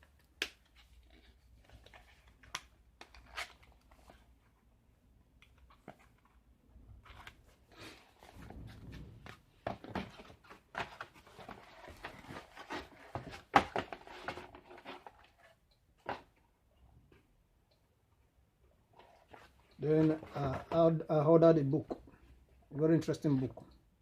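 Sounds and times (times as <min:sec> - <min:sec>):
packaging rustling and crinkling: 0:07.0 - 0:16.2.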